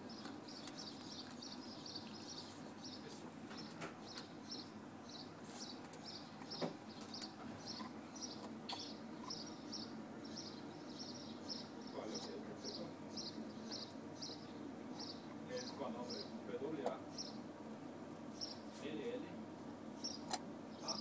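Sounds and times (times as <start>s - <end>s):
animal crunching a carrot: 0.2s - 3.2s.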